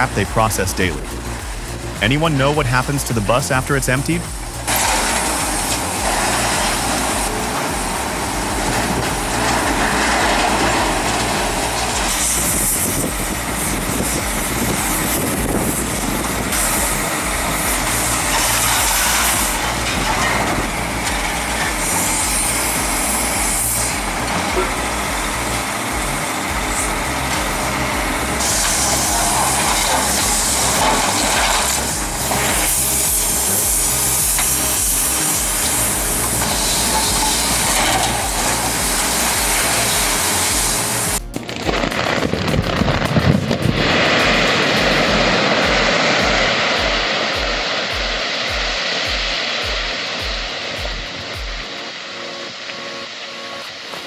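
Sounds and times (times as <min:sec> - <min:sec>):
heavy machinery running: 0:00.0 - 0:51.9
loud hissing: 0:00.0 - 0:54.0.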